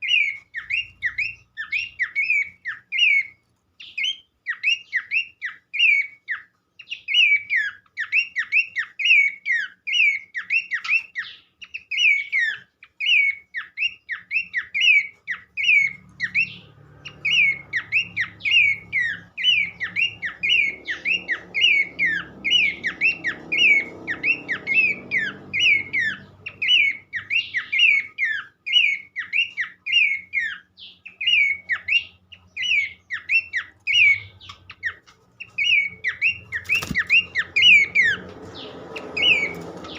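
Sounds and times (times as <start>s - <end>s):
bird chattering calls: 0.0s - 39.9s.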